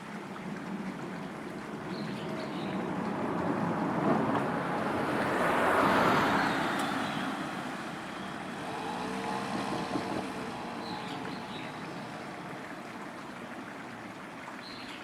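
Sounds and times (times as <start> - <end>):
vehicle passing: 4.4 - 11.4.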